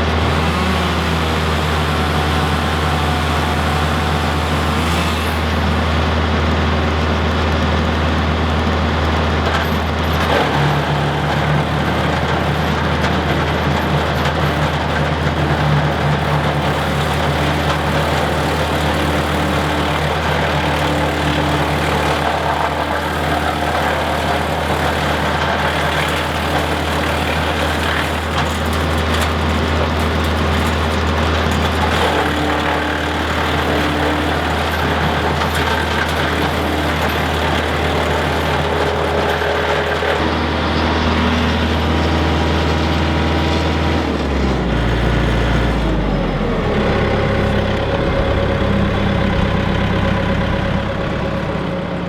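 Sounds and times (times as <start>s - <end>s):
tractor engine running: 0.0s - 52.0s
wood chipper: 0.0s - 52.0s.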